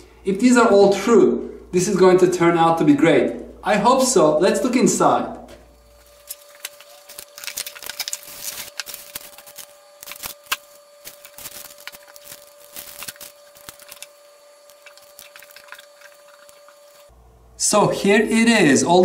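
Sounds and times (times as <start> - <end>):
faint steady hum: 0.0 - 19.0
packaging rustling and clicking: 6.1 - 17.1.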